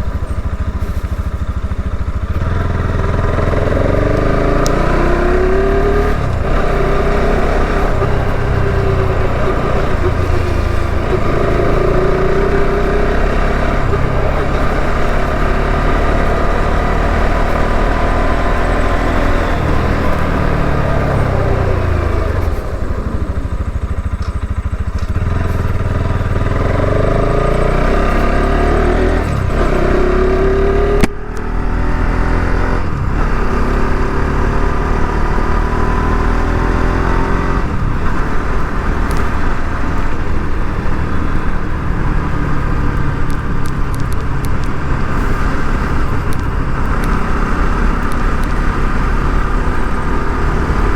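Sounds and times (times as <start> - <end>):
motorcycle engine running: 0.0 - 50.9.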